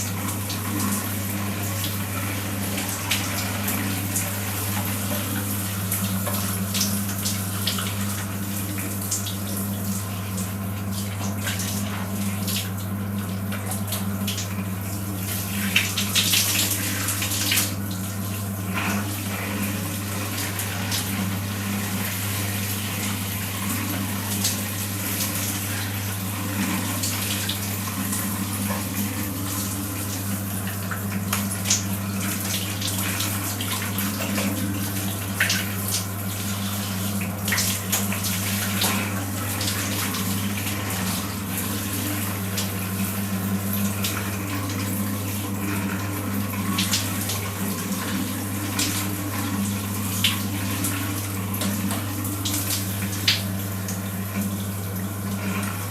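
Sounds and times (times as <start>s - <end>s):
water running: 0.0s - 55.9s.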